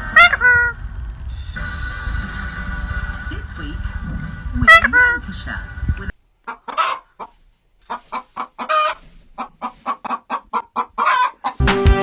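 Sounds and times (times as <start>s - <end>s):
chicken clucking: 0.0s - 0.8s, 6.4s - 11.6s.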